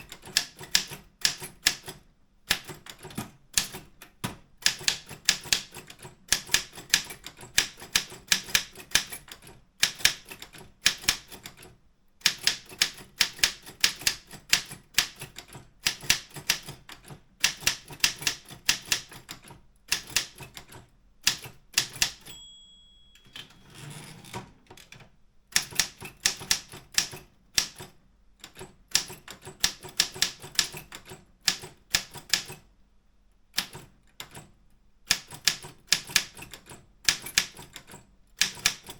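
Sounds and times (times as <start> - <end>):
typewriter keys clacking: 12.3 - 22.4, 25.6 - 32.6, 35.1 - 38.9
typewriter bell ringing: 22.2 - 24.0.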